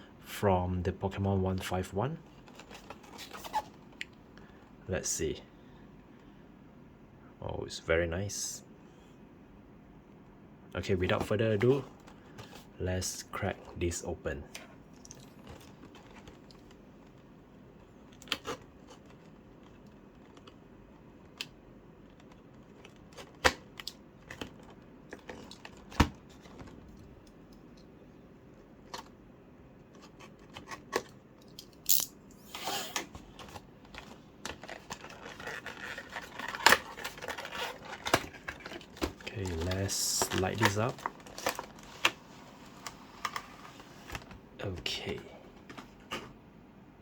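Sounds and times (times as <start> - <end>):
cardboard rustling scrapes: 32.4 - 44.3.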